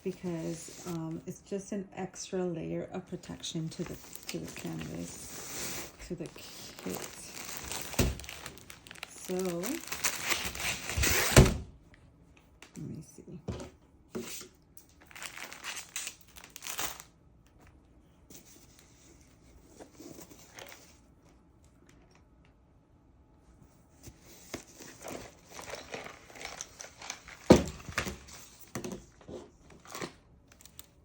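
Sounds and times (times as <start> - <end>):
packaging crinkling and rustling: 0.0 - 1.2, 3.3 - 11.5, 14.8 - 17.8, 19.7 - 21.1, 24.1 - 31.0.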